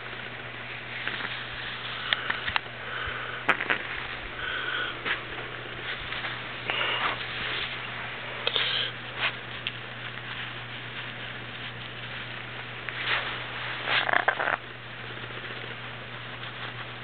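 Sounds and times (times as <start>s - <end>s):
parrot raspy calls: 4.3s - 5.1s.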